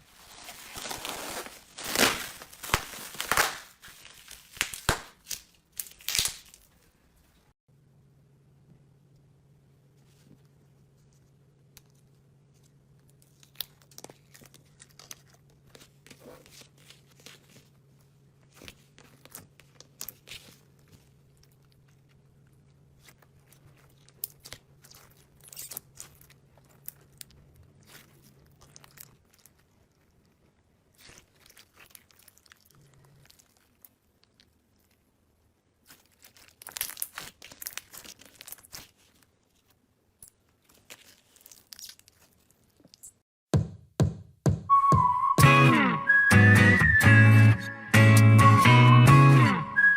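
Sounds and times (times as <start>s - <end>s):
slime crackling and popping: 1.8s - 6.6s, 23.0s - 35.0s, 35.8s - 39.2s.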